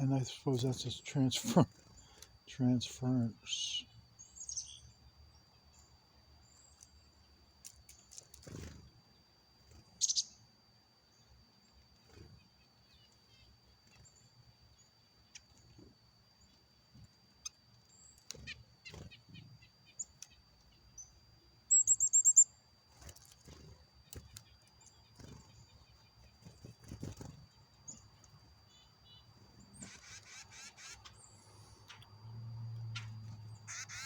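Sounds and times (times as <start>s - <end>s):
faint steady high tone: 0.0s - 5.0s
small birds chirping: 0.0s - 34.0s.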